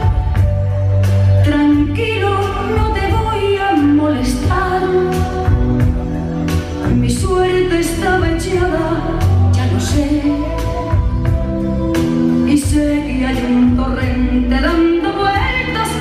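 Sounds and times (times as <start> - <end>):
band accompaniment: 0.0 - 16.0
woman singing a ballad: 0.0 - 16.0.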